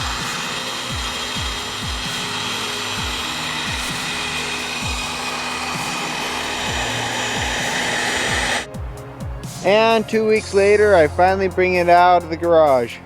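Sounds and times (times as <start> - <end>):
motor or blower rushing: 0.0 - 8.8
background music with low thump: 0.0 - 13.0.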